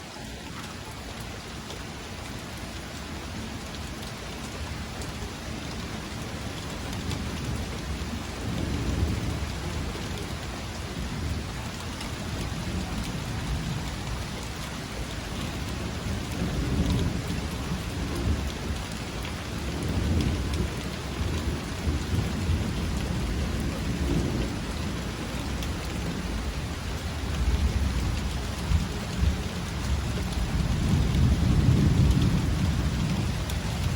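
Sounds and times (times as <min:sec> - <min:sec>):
steady rain falling: 0:00.0 - 0:33.9.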